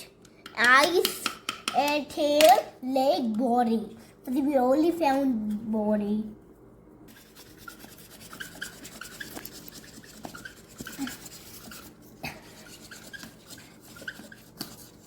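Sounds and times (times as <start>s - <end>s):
scraping and brushing plaster: 7.1s - 15.0s
small ticks and squeaks: 7.7s - 11.1s.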